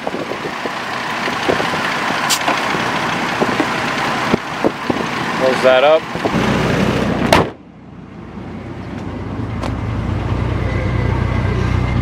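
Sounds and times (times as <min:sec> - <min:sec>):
car engine idling: 0:00.0 - 0:12.0
car hood slamming shut: 0:07.2 - 0:07.6.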